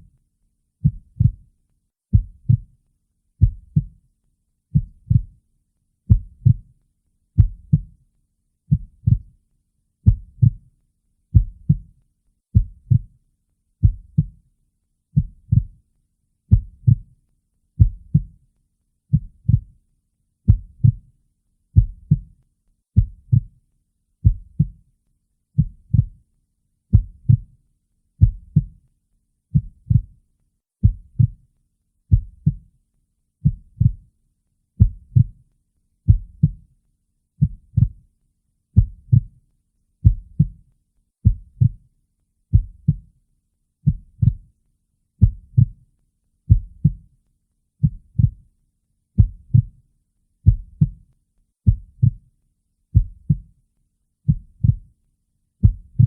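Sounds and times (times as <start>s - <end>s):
heartbeat thumps: 0.8s - 1.4s, 4.8s - 5.3s, 6.1s - 6.6s, 7.4s - 7.9s, 8.7s - 9.3s, 10.1s - 10.6s, 12.6s - 13.1s, 13.8s - 14.3s, 15.2s - 15.8s, 16.5s - 17.0s, 19.1s - 19.7s, 20.5s - 21.0s, 23.0s - 23.5s, 29.6s - 30.1s, 30.8s - 31.4s, 32.1s - 32.6s, 34.8s - 35.3s, 36.1s - 36.6s, 38.8s - 39.3s, 40.0s - 40.6s, 41.2s - 41.8s, 43.9s - 44.4s, 46.5s - 47.0s, 49.2s - 49.7s, 50.4s - 51.0s, 51.7s - 52.2s, 53.0s - 53.4s, 54.3s - 54.8s, 55.6s - 56.0s.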